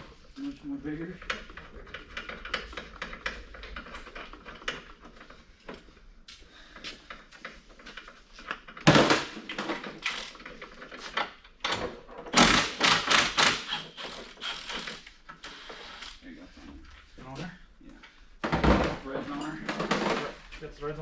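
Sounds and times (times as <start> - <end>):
metal tools clinking and knocking: 19.1 - 20.4.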